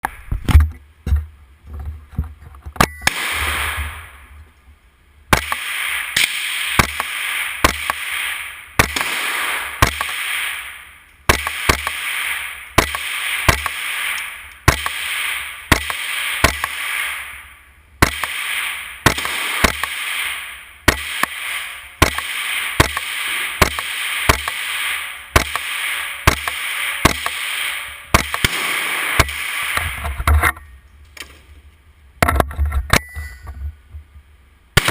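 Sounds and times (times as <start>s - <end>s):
echoing gunshots: 3.0s - 4.3s, 5.3s - 30.2s.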